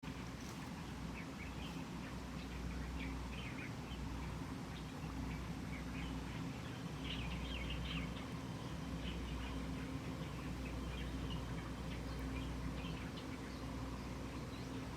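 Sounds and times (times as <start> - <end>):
small birds chirping: 0.0 - 14.9
steady low rumble: 0.0 - 14.9.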